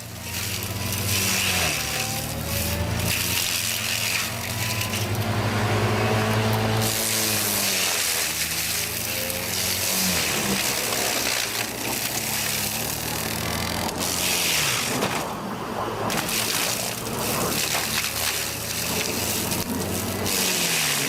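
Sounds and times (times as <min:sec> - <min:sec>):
heavy machine engine under load: 0:00.0 - 0:21.0.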